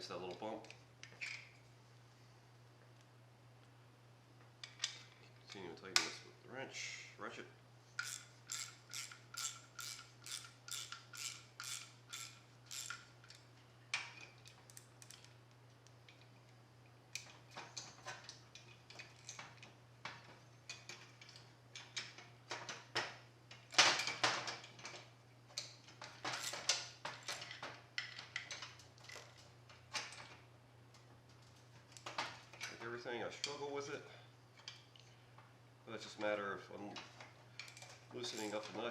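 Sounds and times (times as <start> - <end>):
wrench ratchet clicking: 8.0 - 13.4.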